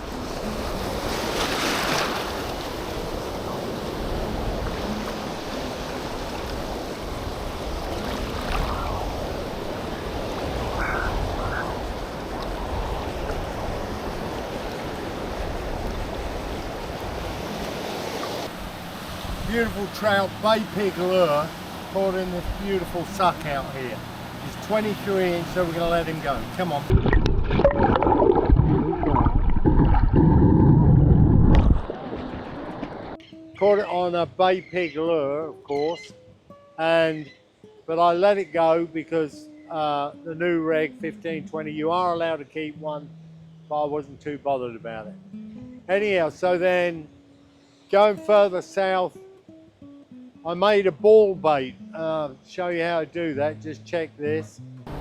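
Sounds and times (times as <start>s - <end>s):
surf breaking: 0.0s - 33.2s
wind buffeting microphone: 6.0s - 19.9s, 26.4s - 33.2s.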